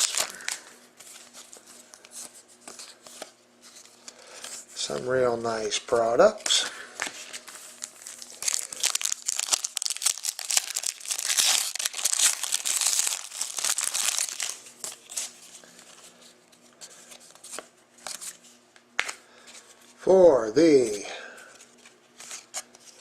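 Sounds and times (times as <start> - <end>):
foil wrapper crinkling and tearing: 0.0 - 2.1, 7.2 - 15.4
cards shuffled in hands: 0.0 - 5.0, 6.2 - 19.8.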